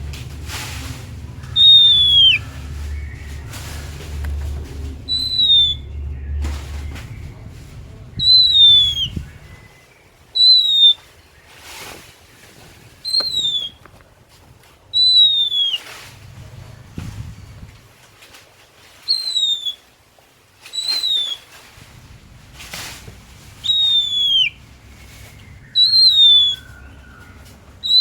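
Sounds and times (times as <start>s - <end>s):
low hum: 0.0s - 10.4s, 15.8s - 17.9s
soft rustles: 0.0s - 28.0s
bird high falling whistle: 1.5s - 2.6s, 5.1s - 5.9s, 8.2s - 9.2s, 10.4s - 11.0s, 13.1s - 13.8s, 15.0s - 15.8s, 19.1s - 19.8s, 20.8s - 21.4s, 23.6s - 24.6s, 25.8s - 26.8s.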